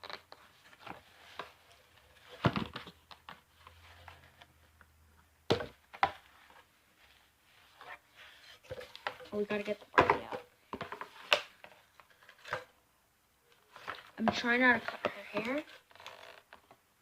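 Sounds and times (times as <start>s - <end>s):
plastic packaging knocking: 10.0s - 11.1s.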